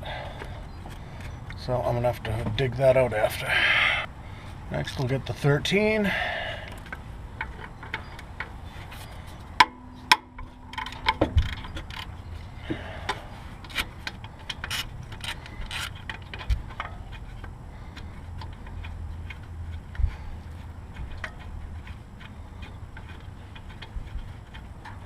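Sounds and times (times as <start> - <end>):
ratchet clicks and metal knocks: 6.7 - 25.0.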